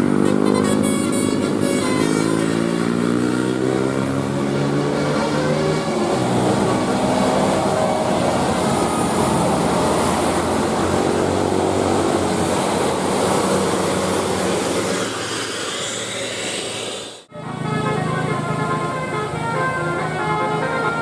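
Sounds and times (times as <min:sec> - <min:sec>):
bus driving past: 0:00.0 - 0:21.0.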